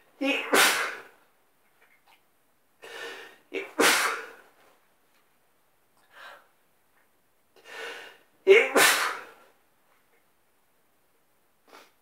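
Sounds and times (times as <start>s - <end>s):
person sneezing: 0.2s - 1.2s, 2.9s - 4.5s, 8.5s - 9.5s.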